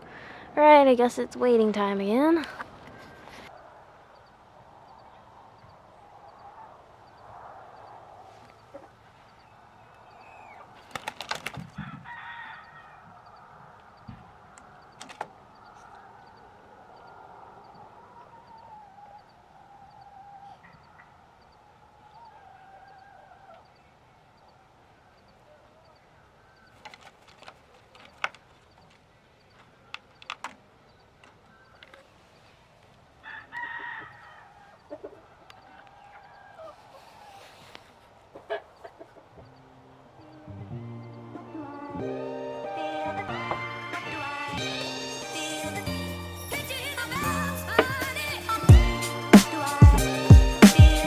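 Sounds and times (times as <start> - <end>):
chickens clucking and squawking: 2.5 - 27.2, 33.2 - 45.9
flurry of sharp clicks: 10.6 - 11.8, 13.1 - 15.8, 26.6 - 32.0.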